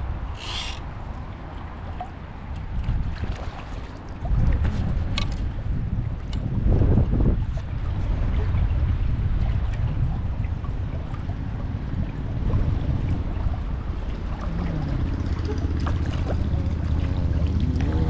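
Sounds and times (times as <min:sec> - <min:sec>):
low rumble: 0:08.1 - 0:18.0.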